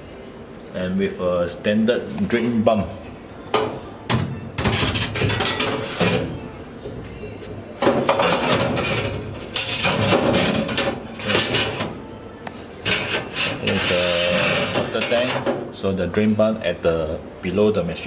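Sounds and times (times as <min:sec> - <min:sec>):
dishwasher parts clattering: 0:04.6 - 0:06.3, 0:07.8 - 0:11.9, 0:12.9 - 0:15.7.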